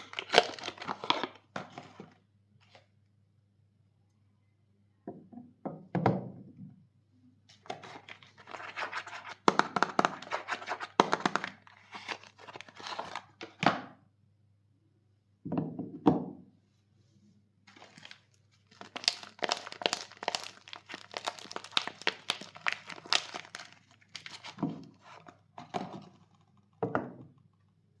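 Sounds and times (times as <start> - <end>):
wrappers crackling and rustling: 0.0 - 1.9, 17.7 - 26.1.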